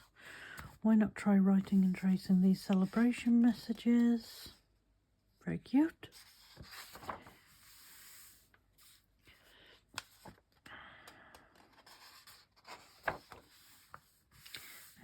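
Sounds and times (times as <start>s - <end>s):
paper rustling and sliding: 6.1s - 10.6s, 11.6s - 15.0s.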